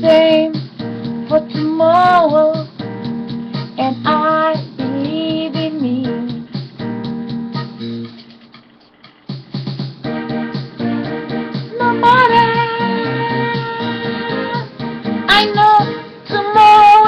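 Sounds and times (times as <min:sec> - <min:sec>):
backing music with chords: 0:00.0 - 0:17.0
person singing long notes: 0:11.7 - 0:17.0.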